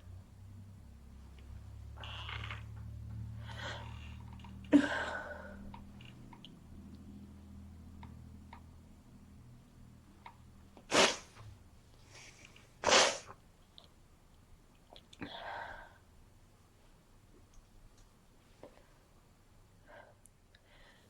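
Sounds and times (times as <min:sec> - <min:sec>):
person sneezing: 0:10.9 - 0:11.4, 0:12.8 - 0:13.3.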